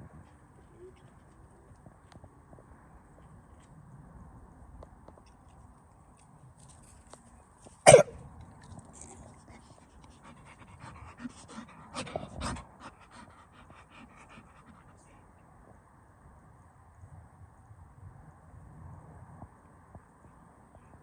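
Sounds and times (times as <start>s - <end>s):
dog panting: 9.0s - 15.3s.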